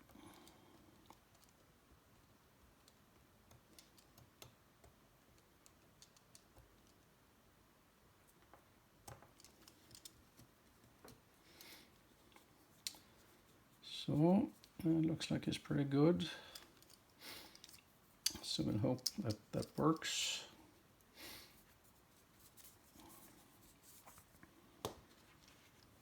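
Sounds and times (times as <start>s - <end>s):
small parts clicking and tapping: 0.0s - 7.2s, 8.2s - 13.5s, 16.4s - 20.2s.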